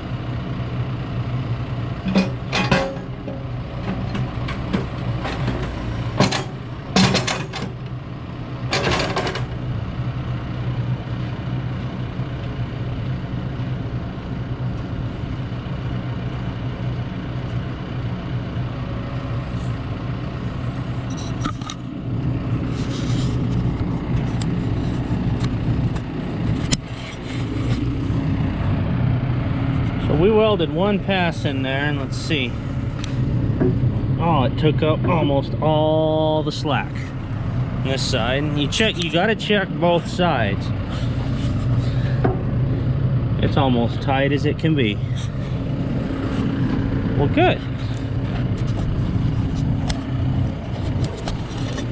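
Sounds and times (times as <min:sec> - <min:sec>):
diesel engine idling: 0:00.0 - 0:51.9
metallic clanks and knocks: 0:02.0 - 0:07.8, 0:08.7 - 0:09.6, 0:33.5 - 0:33.9, 0:42.1 - 0:42.6.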